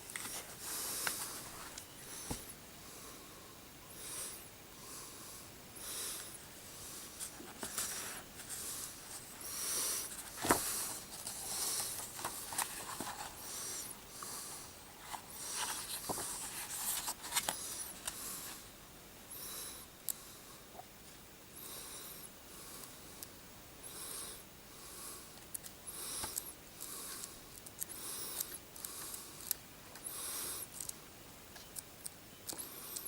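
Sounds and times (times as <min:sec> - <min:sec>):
person breathing heavily: 0:00.3 - 0:16.7, 0:23.8 - 0:29.5
paper clicks and rustles: 0:07.2 - 0:09.3, 0:10.1 - 0:13.4, 0:15.0 - 0:18.2.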